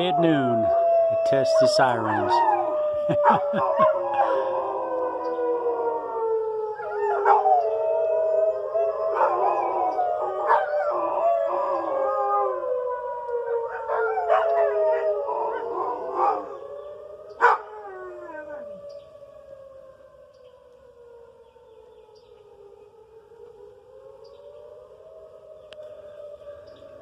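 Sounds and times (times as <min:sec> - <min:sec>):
dogs howling: 0:00.0 - 0:20.0
tornado siren: 0:00.0 - 0:27.0.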